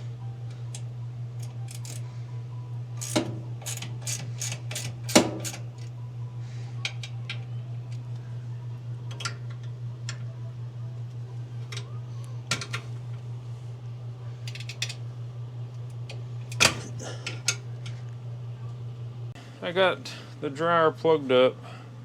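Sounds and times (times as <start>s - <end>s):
steady low hum: 0.0s - 22.0s
metal tools clicking on metal: 1.4s - 2.0s, 3.0s - 5.6s.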